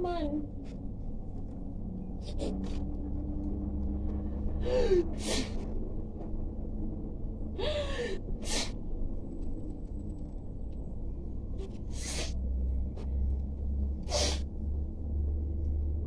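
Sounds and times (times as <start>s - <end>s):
person sneezing: 5.2s - 5.6s, 8.4s - 8.7s, 14.1s - 14.4s.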